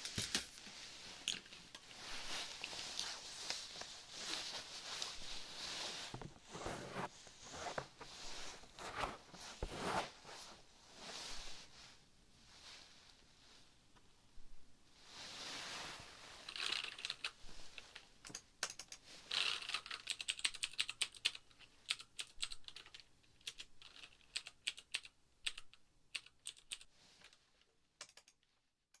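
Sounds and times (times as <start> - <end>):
soft brushing swishes: 1.9 - 11.8
light sharp clicks and taps: 28.0 - 29.0.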